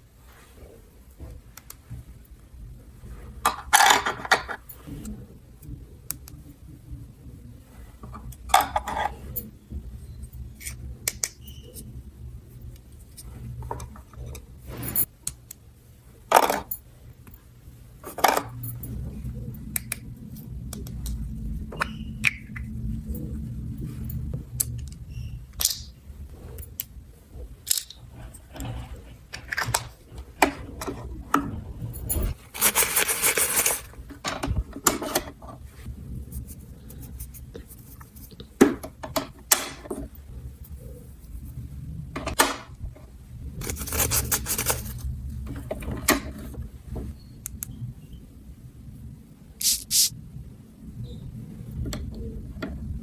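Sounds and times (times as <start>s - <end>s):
packaging rustle: 32.4s - 33.9s, 43.6s - 45.0s.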